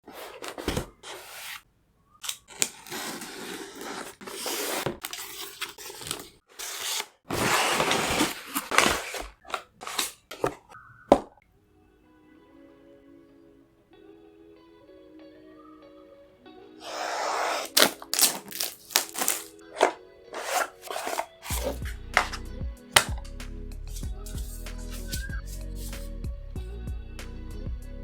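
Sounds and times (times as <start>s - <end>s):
packaging scraping and rustling: 0.0s - 1.6s, 2.2s - 10.8s, 16.8s - 22.4s.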